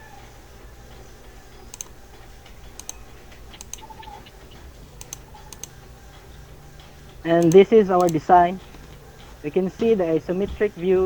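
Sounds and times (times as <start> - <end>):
low steady hum: 0.0 - 11.0
computer key clicks: 1.7 - 2.0, 2.7 - 4.2, 5.0 - 5.8, 7.3 - 9.0.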